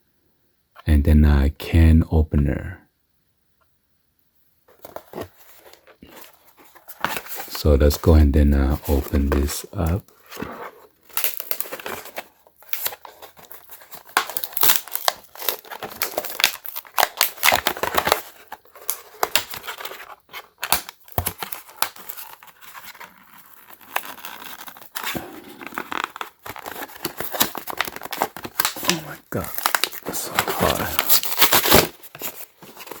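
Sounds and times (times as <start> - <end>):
packaging crinkling and tearing: 4.7 - 33.0.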